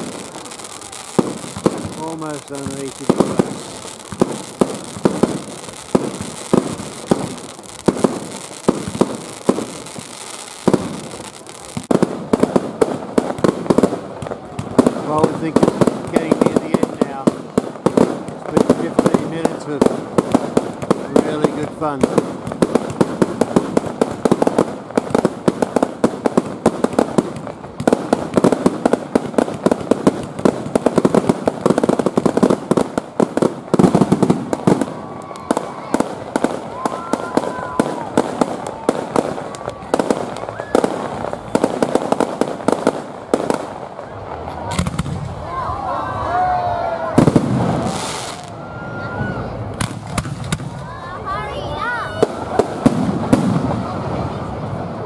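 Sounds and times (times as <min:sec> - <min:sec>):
firework shells bursting: 0:00.0 - 0:18.5
fireworks exploding: 0:00.0 - 0:55.0.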